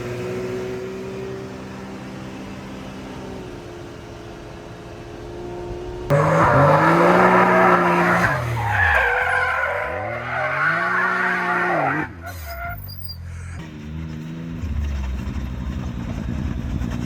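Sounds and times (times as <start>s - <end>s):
sports car engine hum: 0.0s - 17.0s
raspy exhaust revving: 5.2s - 12.2s.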